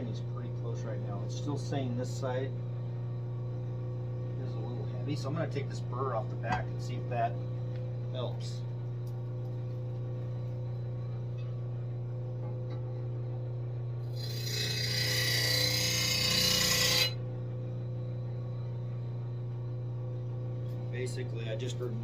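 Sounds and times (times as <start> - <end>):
abrasive scraping steel blade: 14.2 - 17.2.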